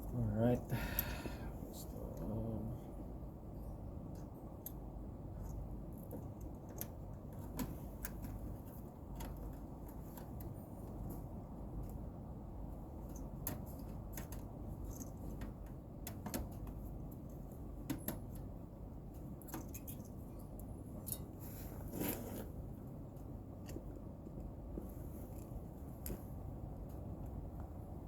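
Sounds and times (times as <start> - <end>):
steady low rumble: 0.0 - 19.4.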